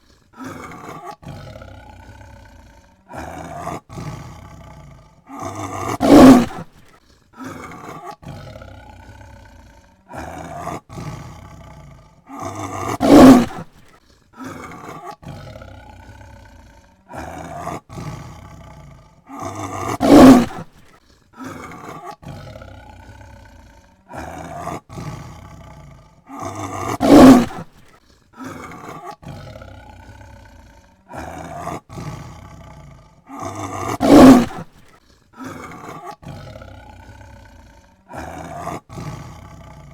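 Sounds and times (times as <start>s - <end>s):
tiger roaring: 0.0s - 39.9s
tiger short calls: 5.3s - 6.7s, 12.3s - 13.7s, 19.3s - 20.7s, 26.4s - 27.7s, 33.4s - 34.7s.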